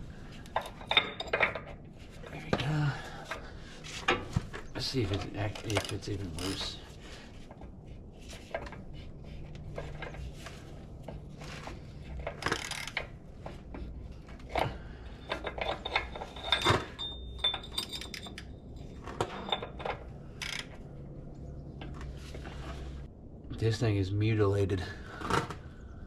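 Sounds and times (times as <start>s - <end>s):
metal clinks and rattles: 0.4s - 1.9s, 12.1s - 20.8s.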